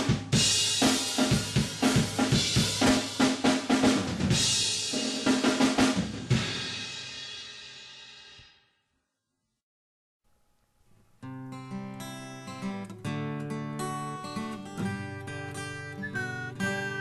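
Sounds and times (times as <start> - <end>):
drum kit playing rapid hits: 0.0 - 8.4.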